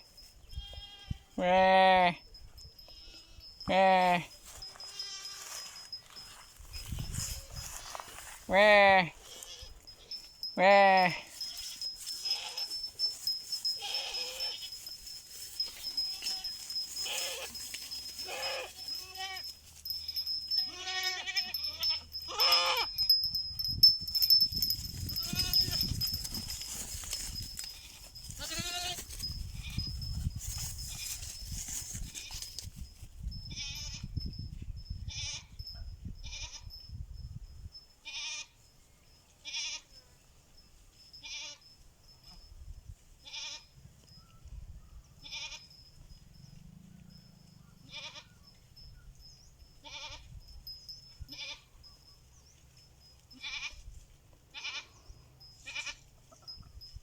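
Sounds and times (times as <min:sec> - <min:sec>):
goats bleating: 0:00.7 - 0:02.2, 0:02.9 - 0:05.5, 0:08.5 - 0:12.8, 0:13.8 - 0:14.8, 0:16.0 - 0:17.6, 0:18.2 - 0:19.5, 0:20.5 - 0:22.9, 0:25.2 - 0:25.8, 0:27.8 - 0:29.0.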